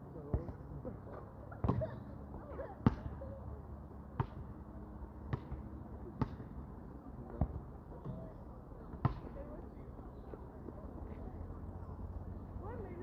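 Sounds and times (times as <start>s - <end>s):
basketball bouncing on a court: 5.3s - 5.6s.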